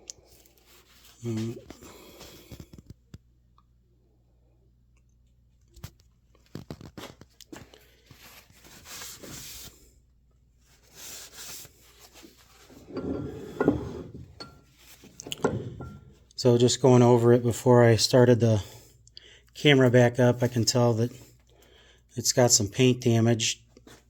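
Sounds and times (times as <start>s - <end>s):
knocks and clunks: 12.7s - 16.3s.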